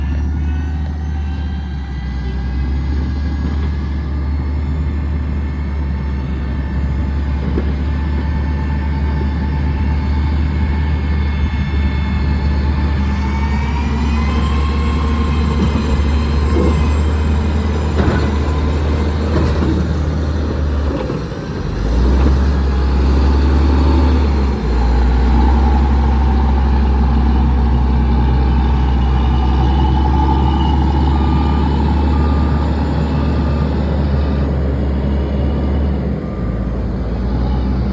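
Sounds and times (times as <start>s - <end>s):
heavy diesel engine droning: 0.0s - 37.9s
reversing alarm beeping: 23.4s - 37.7s.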